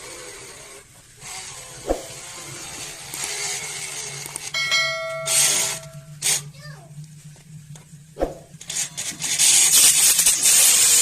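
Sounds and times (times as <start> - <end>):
hissing scraping noise: 0.0 - 4.5
steady high whine: 0.9 - 10.6.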